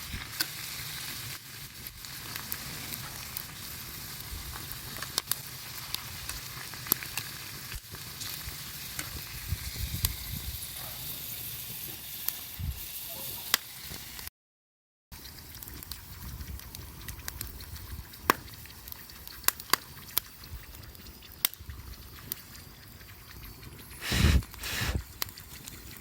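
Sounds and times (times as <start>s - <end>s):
food sizzling in a pan: 0.0s - 14.3s, 24.0s - 25.1s
sharp pops: 18.2s - 18.6s, 24.0s - 25.4s.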